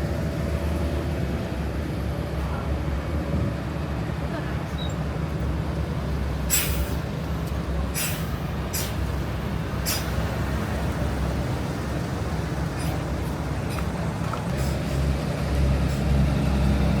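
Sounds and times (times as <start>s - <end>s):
buses idling: 0.0s - 17.0s
air brake hisses: 6.5s - 7.0s, 7.9s - 9.1s, 9.8s - 10.2s, 12.8s - 13.1s.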